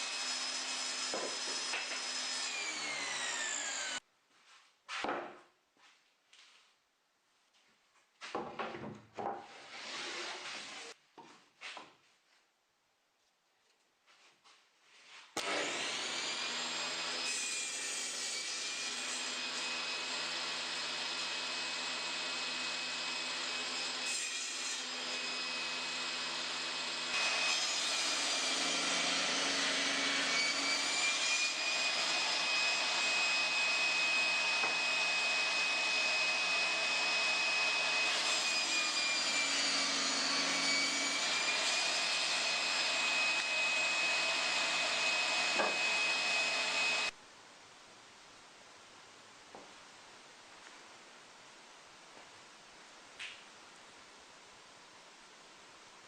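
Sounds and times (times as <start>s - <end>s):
circular saw cutting wood: 0.0s - 4.0s, 9.5s - 11.0s, 15.4s - 47.2s.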